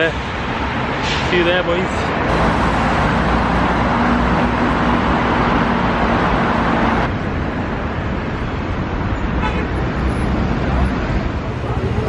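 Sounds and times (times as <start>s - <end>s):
road traffic noise: 0.0s - 12.0s
vehicle engine hum: 1.9s - 12.0s.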